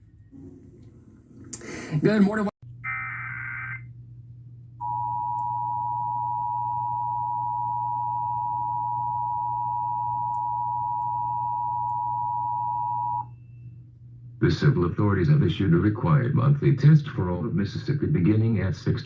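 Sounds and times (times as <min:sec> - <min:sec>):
low steady hum: 0:00.0 - 0:19.0
two-tone alert tone: 0:02.8 - 0:03.8.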